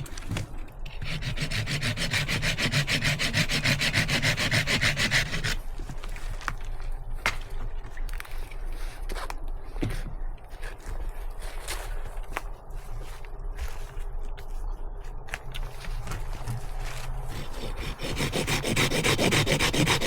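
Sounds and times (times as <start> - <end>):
hand saw cutting wood: 0.9 - 5.6, 17.2 - 20.0.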